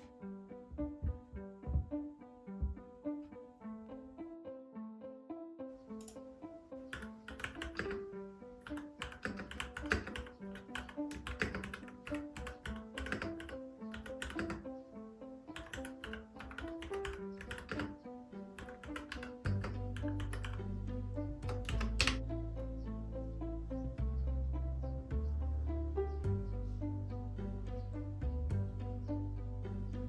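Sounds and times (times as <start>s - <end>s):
plucked background music: 0.0s - 30.0s
mechanical keyboard key clicks: 7.0s - 8.0s, 8.7s - 14.6s, 15.6s - 17.9s, 18.6s - 20.6s, 21.5s - 22.2s.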